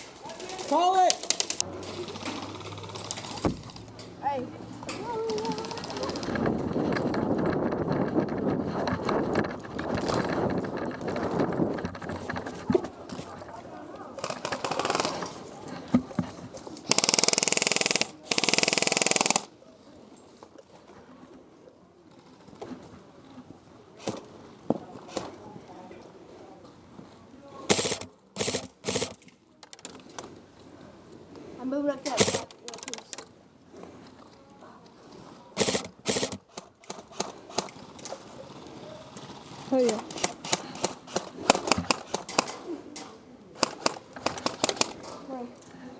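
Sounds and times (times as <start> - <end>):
airsoft gun firing bursts: 16.9 - 19.5, 27.7 - 29.2, 32.1 - 32.6, 35.6 - 37.7, 40.1 - 42.6, 43.6 - 45.0.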